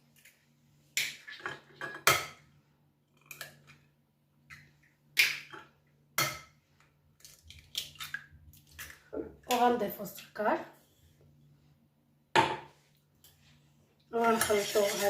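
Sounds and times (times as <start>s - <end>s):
eggs cracked against bowl rim: 5.2s - 5.6s.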